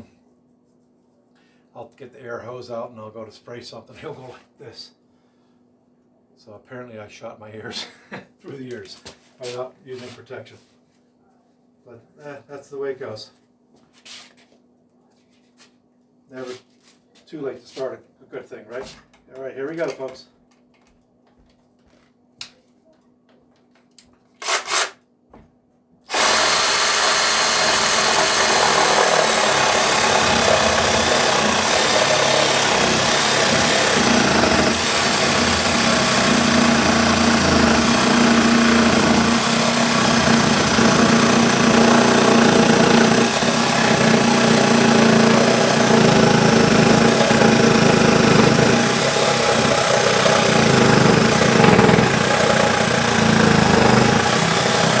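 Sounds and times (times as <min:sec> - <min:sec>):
reciprocating saw cutting plywood: 0:26.1 - 0:55.0.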